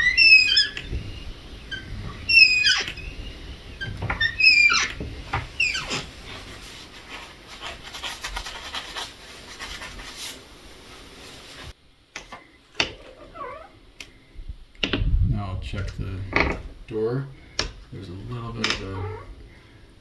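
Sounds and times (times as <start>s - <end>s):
door hinge squeaking: 0.0s - 6.4s, 12.8s - 13.8s, 18.5s - 19.4s
rough rubbing sound: 0.0s - 11.8s.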